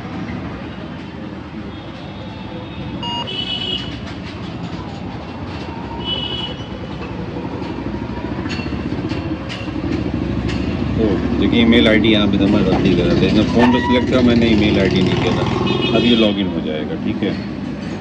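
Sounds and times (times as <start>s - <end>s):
short high-pitched beeps: 3.0s - 3.3s, 13.6s - 14.1s.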